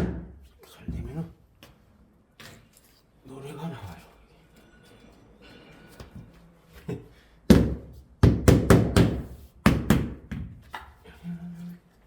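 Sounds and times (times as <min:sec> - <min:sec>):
hammer knocking floorboards: 0:07.5 - 0:10.6.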